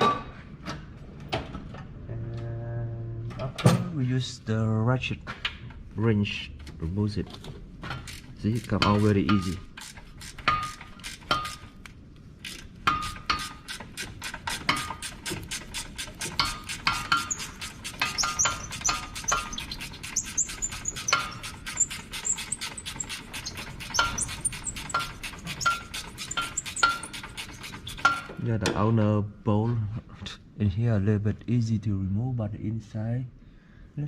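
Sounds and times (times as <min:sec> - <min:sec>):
ratchet wrench clicking: 0:08.0 - 0:11.6, 0:12.4 - 0:28.3.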